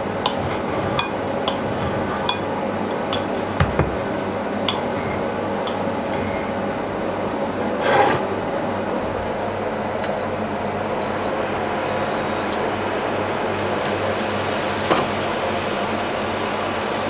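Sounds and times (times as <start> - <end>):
appliance hum: 0.0 - 17.0
microwave keypad beeps: 10.0 - 10.4, 11.0 - 12.6.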